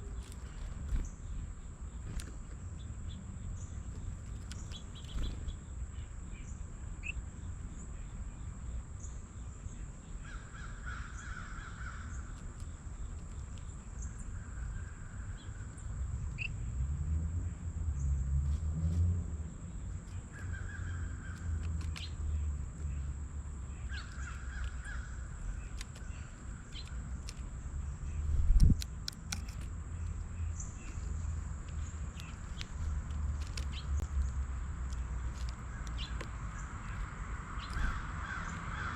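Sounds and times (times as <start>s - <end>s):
small birds chirping: 0.0s - 38.9s
crow cawing: 10.3s - 12.2s, 37.8s - 38.9s.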